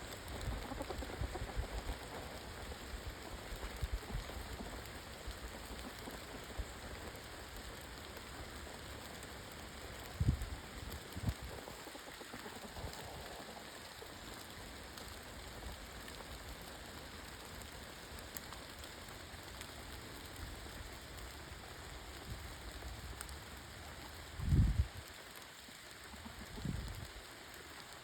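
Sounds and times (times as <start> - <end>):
faint patter: 0.0 - 28.0.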